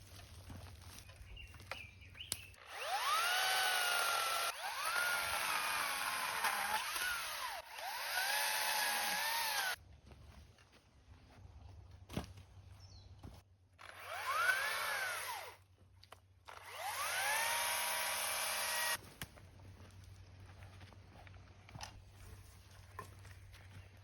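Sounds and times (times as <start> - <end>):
electric chainsaw motor whine: 2.6 - 9.8, 13.8 - 15.6, 16.5 - 19.0.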